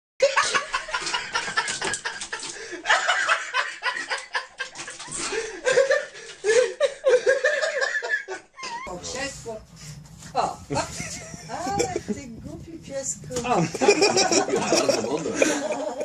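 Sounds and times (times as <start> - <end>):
people laughing: 0.2 - 8.9, 10.7 - 12.3, 13.5 - 16.0.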